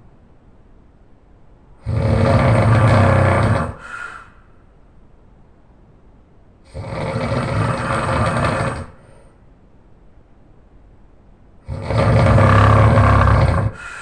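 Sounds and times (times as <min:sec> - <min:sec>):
man snoring loudly: 0:01.8 - 0:03.8, 0:06.7 - 0:09.0, 0:11.7 - 0:13.8.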